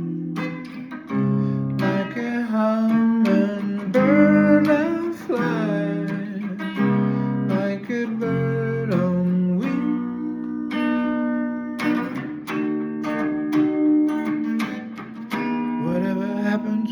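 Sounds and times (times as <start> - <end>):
acoustic guitar chords: 0.0 - 16.9
bending guitar melody: 0.0 - 16.9.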